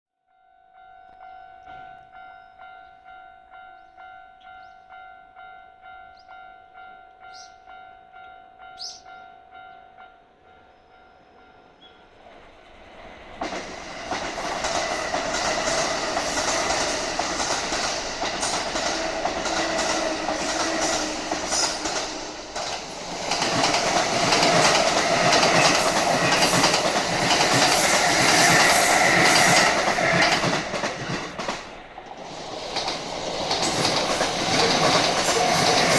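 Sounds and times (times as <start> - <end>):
level crossing warning bell: 0.3 - 12.2
electric train passing: 1.2 - 35.9
train wheels clacking on rails: 12.2 - 35.9.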